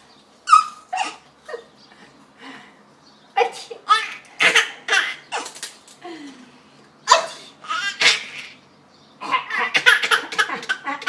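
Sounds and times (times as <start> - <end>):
baby laughing: 0.5 - 1.8, 3.4 - 5.6, 7.1 - 8.6, 9.2 - 11.0.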